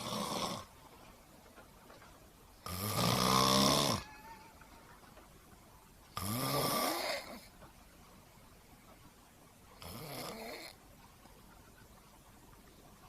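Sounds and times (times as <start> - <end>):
person snoring: 0.0 - 0.7, 2.6 - 4.0, 6.2 - 7.4, 9.8 - 10.8.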